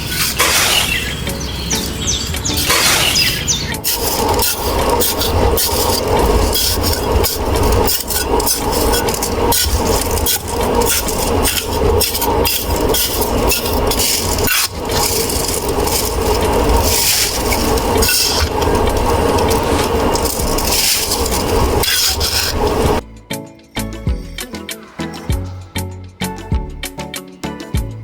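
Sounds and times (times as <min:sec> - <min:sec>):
small motor running: 0:00.0 - 0:23.0
knocking and scraping: 0:01.7 - 0:23.0.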